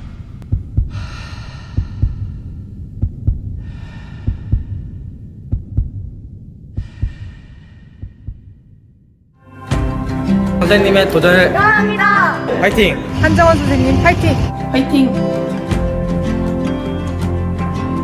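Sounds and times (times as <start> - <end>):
heartbeat thumps: 0.0 - 8.9
low hum: 0.0 - 9.3, 12.8 - 14.8
airy swells: 11.8 - 15.2.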